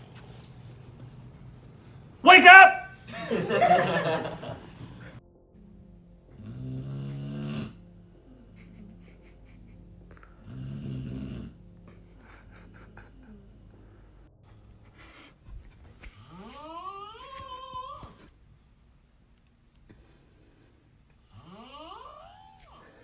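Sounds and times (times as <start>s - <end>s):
person snoring: 6.4s - 9.4s, 10.4s - 11.6s.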